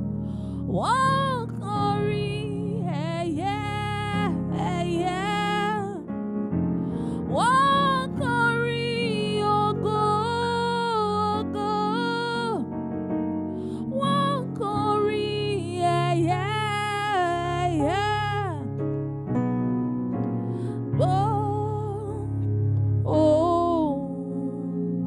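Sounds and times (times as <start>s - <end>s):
electric keyboard chords: 0.0s - 25.0s.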